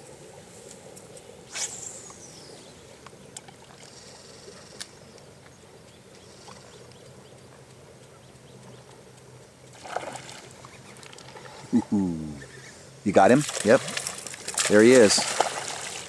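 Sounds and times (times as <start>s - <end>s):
fishing line whooshing off reel: 1.4s - 2.5s.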